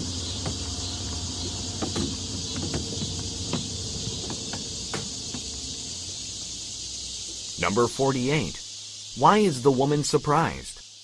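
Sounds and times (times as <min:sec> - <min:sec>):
low hum: 0:00.0 - 0:08.7
steady high hiss: 0:00.0 - 0:11.0.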